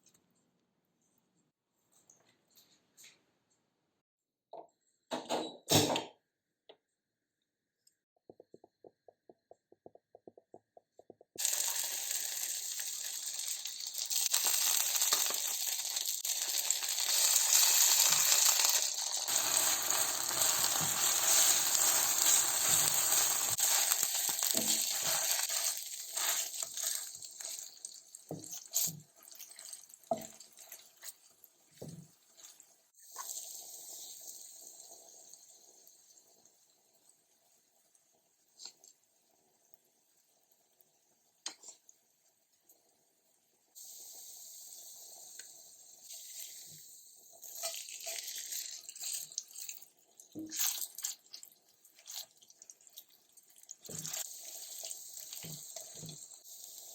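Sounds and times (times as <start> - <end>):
pops and knocks: 8.2 - 11.4
food sizzling in hot oil: 11.4 - 56.9.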